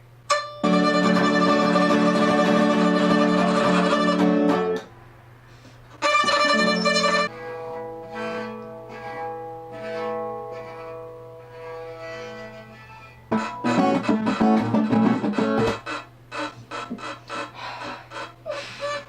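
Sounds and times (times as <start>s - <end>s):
bowed violin notes: 0.3s - 4.9s, 6.0s - 19.0s
guitar strumming and plucking: 0.3s - 4.9s, 13.3s - 16.0s.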